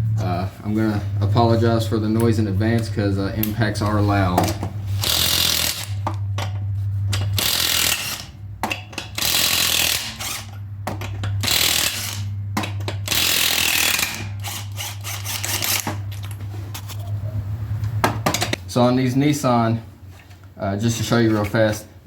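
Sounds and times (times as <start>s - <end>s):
low motor hum: 0.0s - 18.6s
impact wrench hammering: 4.4s - 16.0s.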